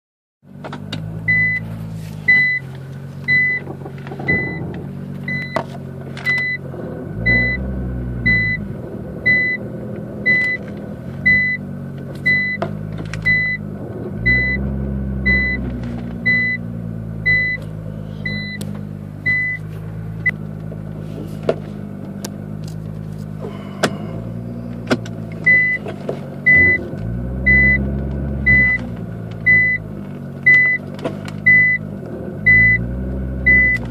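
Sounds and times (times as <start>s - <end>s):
car engine idling: 0.5s - 33.9s
clicks and creaks from car: 0.6s - 1.1s, 2.0s - 6.6s, 11.9s - 14.1s, 15.6s - 16.3s, 19.6s - 27.2s, 27.8s - 32.2s
reverse warning beeps: 1.3s - 1.7s, 2.3s - 2.6s, 3.3s - 3.6s, 4.3s - 4.6s, 5.3s - 5.6s, 6.3s - 6.6s, 7.2s - 9.6s, 10.2s - 11.6s, 12.3s - 12.6s, 13.2s - 13.6s, 14.2s - 17.6s, 18.2s - 18.6s, 19.2s - 19.6s, 25.4s - 25.8s, 26.4s - 30.8s, 31.4s - 33.9s.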